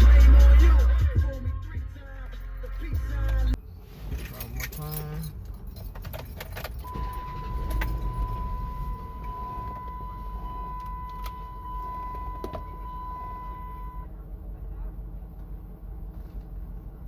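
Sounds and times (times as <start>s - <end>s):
high-pitched electronic beep: 6.8s - 14.1s
low rumble: 6.8s - 17.0s.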